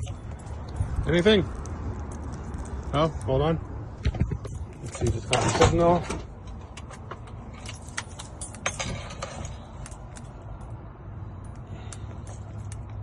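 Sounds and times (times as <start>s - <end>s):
keys jingling: 6.8s - 10.8s.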